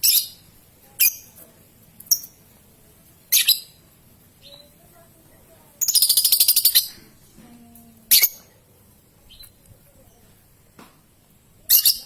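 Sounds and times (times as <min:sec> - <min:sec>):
bird chirping trill: 0:03.3 - 0:03.8, 0:04.4 - 0:04.8, 0:05.8 - 0:06.9, 0:09.2 - 0:10.2, 0:11.7 - 0:12.0
sharp high-pitched bird call: 0:11.7 - 0:12.0.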